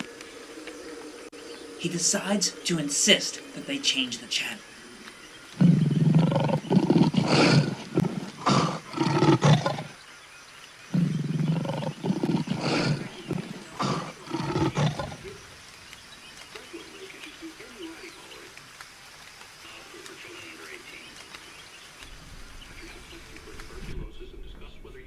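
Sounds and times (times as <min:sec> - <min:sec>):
lion-like roars: 0:05.6 - 0:10.0, 0:10.9 - 0:15.4.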